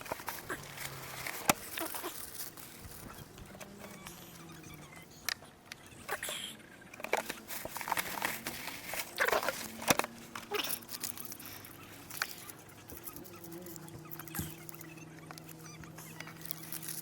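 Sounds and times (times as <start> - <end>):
knife and food clicks and scrapes: 6.9 - 17.0.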